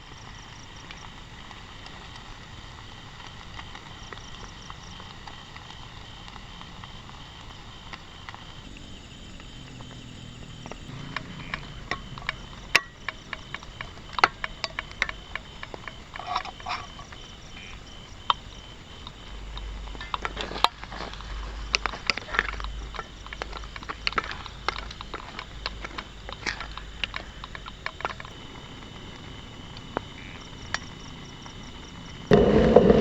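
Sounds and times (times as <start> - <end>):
objects clicking and knocking: 10.7 - 28.4
low rumble: 32.2 - 33.0.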